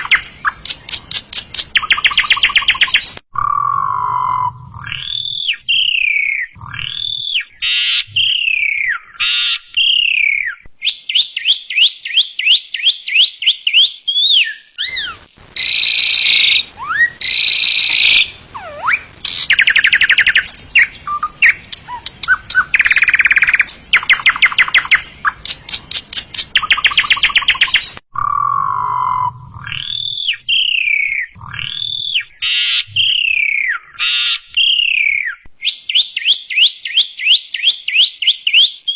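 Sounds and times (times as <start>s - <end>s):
bird singing varied song: 0.0s - 38.9s.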